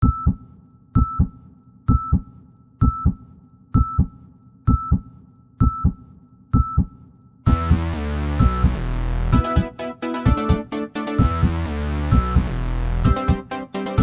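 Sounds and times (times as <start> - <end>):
heart monitor beep: 0.0 - 0.4, 1.0 - 3.2, 3.8 - 4.1, 4.7 - 6.0
synthesized heartbeat thumps: 0.0 - 10.6, 11.2 - 13.5.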